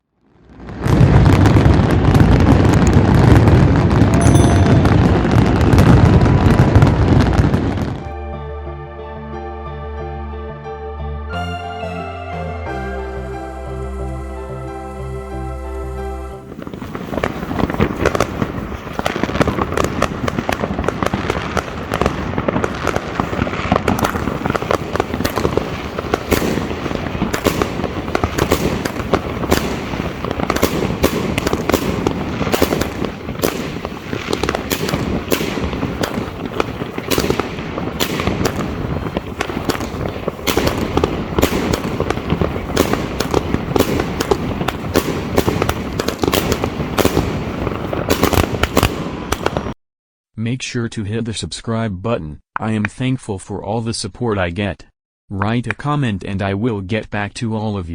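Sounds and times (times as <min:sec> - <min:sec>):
fireworks salute bangs: 0:00.7 - 0:08.0, 0:16.4 - 0:49.8.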